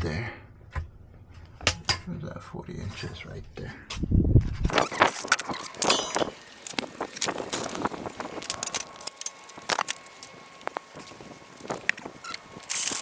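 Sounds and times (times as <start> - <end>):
tools and wood clicking and knocking: 4.8 - 13.0.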